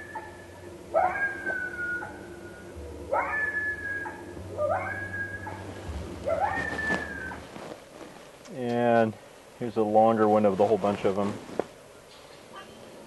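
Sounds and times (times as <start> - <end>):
coyote howling: 0.0 - 7.6
low steady hum: 0.0 - 13.0.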